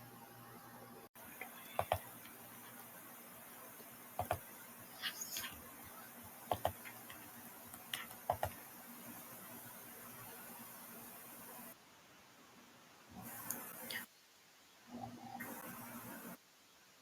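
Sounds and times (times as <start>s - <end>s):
faint steady hiss: 0.0s - 17.0s
sharp clicks: 1.4s - 2.9s, 4.2s - 4.4s, 6.2s - 8.6s.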